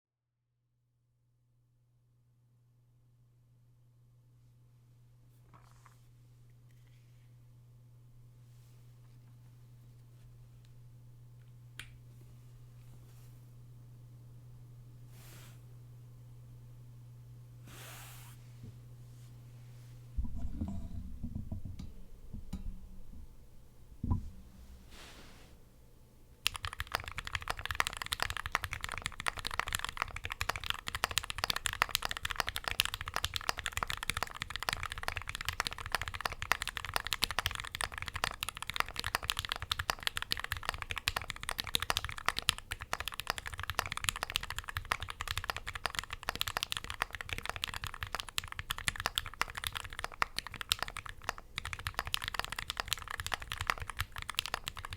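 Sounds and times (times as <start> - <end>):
knock: 20.2 - 22.8
mechanical keyboard typing: 26.4 - 54.9.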